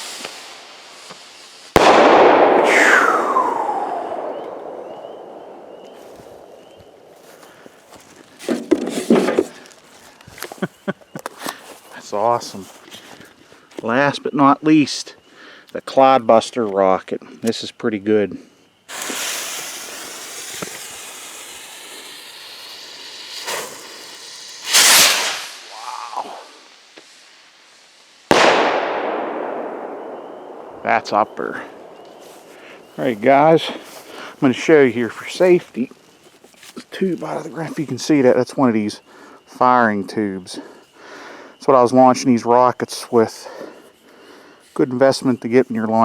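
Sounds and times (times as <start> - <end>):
firework rocket bang: 0.0 - 7.4, 18.9 - 27.3, 28.2 - 33.0
firework hissing crackling tail: 0.0 - 9.8, 18.9 - 35.6.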